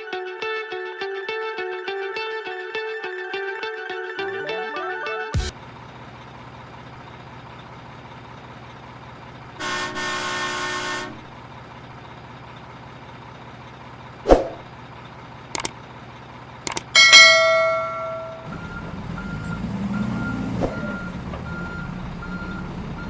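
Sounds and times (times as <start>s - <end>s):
truck horn: 9.6s - 11.3s.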